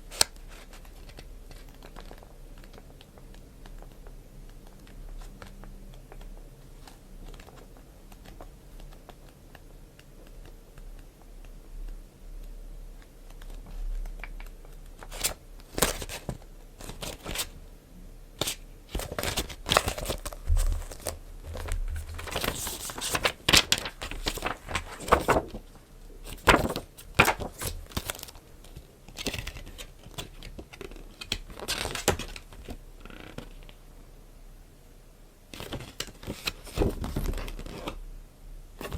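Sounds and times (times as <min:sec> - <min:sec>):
packaging crinkling and tearing: 0:18.4 - 0:32.8.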